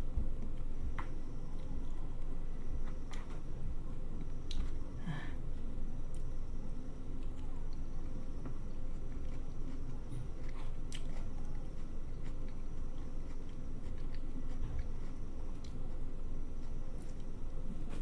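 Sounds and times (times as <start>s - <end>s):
faint hum: 0.0s - 18.0s
person chewing food: 8.7s - 16.0s.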